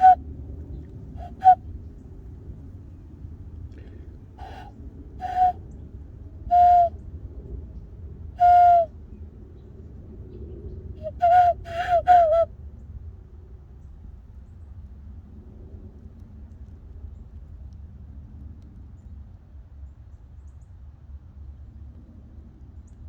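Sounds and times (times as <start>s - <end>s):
hand-whistled owl-like hoots: 0.0s - 0.2s, 1.2s - 1.6s, 4.4s - 5.6s, 6.5s - 6.9s, 8.4s - 8.9s, 11.0s - 12.5s.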